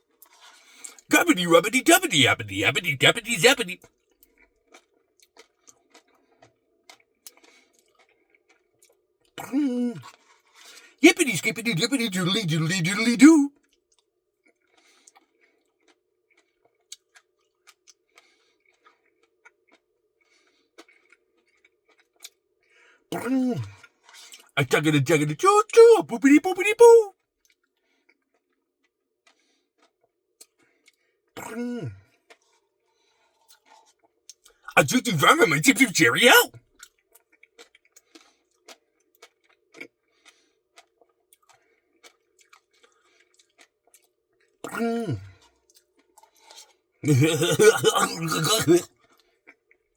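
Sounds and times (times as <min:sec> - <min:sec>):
mouth clicks and chewing: 0:04.2 - 0:11.0, 0:13.7 - 0:22.4, 0:27.4 - 0:32.7, 0:33.3 - 0:34.7, 0:36.8 - 0:46.8.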